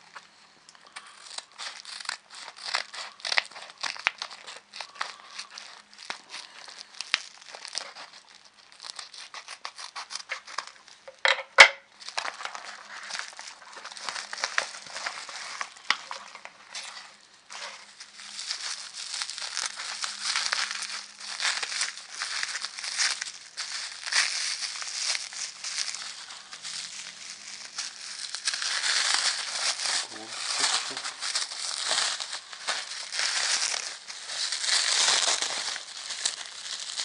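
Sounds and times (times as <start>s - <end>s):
packaging crinkling and rustling: 0.2s - 37.0s
packaging crackling: 0.7s - 11.2s, 11.9s - 37.0s
packaging tearing snap: 0.8s - 10.8s.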